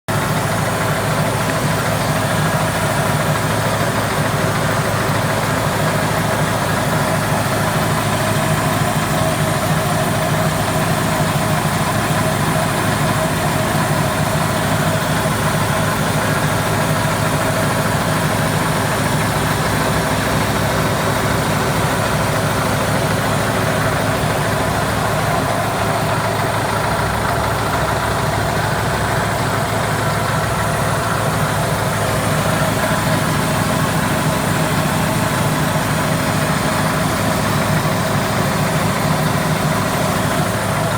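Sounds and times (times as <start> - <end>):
diesel engine running: 0.1 - 40.9
engine hissing: 0.1 - 40.9.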